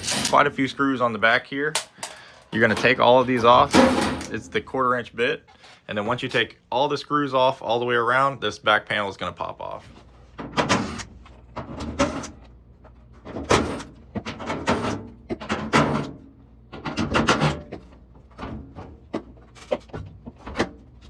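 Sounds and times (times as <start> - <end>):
metal panel clanking and rattling: 0.0 - 0.5, 1.8 - 4.6.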